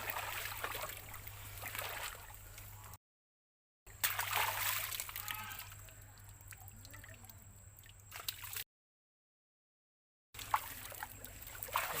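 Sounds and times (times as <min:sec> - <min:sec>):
water dripping and splashing: 0:00.0 - 0:02.7, 0:03.9 - 0:08.6, 0:10.4 - 0:12.0.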